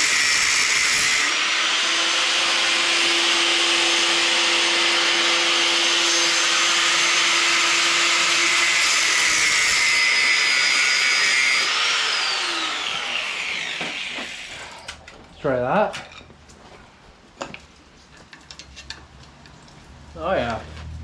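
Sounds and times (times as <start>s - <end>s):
angle grinder grinding metal: 0.0s - 15.0s.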